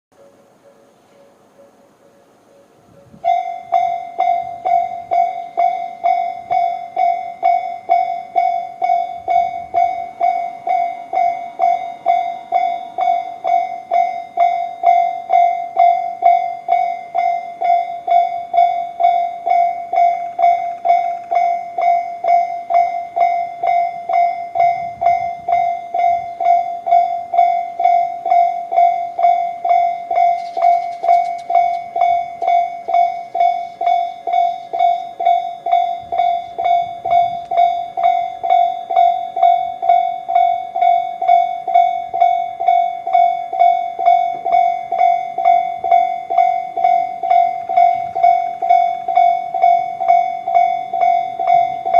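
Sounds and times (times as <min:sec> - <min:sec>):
level crossing alarm ringing: 0:00.1 - 0:51.9.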